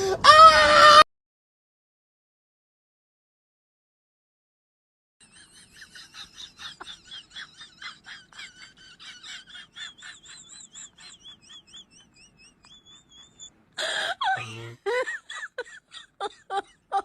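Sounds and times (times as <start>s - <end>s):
animal chirping: 10.0s - 13.5s.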